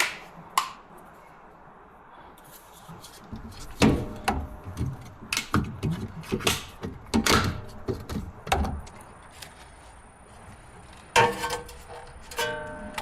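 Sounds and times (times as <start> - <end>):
tools and metal parts clanking: 11.0 - 13.0.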